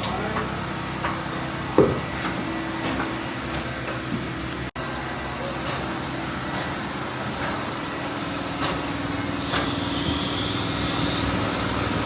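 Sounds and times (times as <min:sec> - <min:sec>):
engine running: 0:00.0 - 0:12.0.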